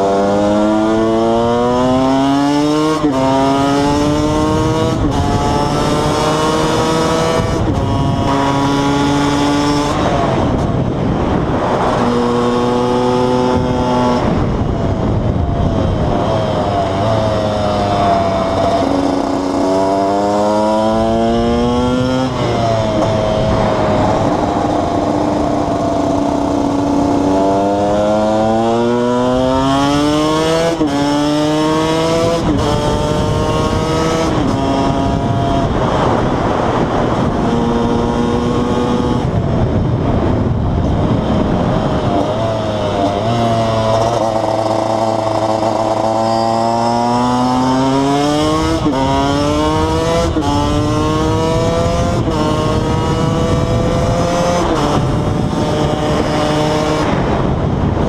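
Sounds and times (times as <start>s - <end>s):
two-stroke motorcycle engine shifting: 3.0s - 28.6s, 40.8s - 58.0s.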